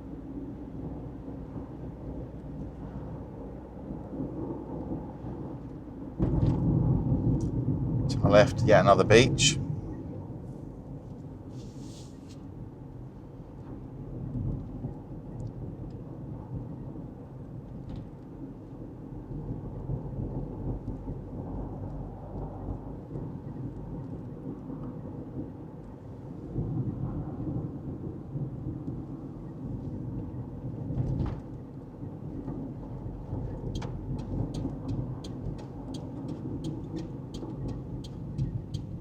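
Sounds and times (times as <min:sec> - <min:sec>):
car cabin road rumble: 0:08.1 - 0:09.9, 0:30.8 - 0:39.0.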